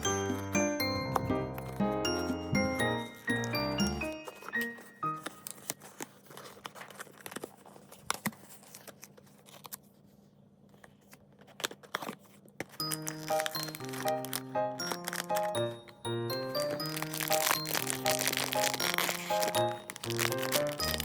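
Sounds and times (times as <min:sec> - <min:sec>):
background music: 0:00.0 - 0:05.8, 0:12.8 - 0:21.0
packaging crinkling and tearing: 0:03.0 - 0:10.1, 0:10.7 - 0:21.0.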